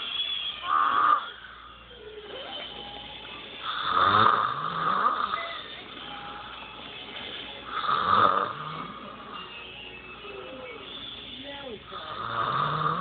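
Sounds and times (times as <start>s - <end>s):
person snoring loudly: 3.6s - 5.5s, 7.7s - 9.0s, 12.0s - 13.0s.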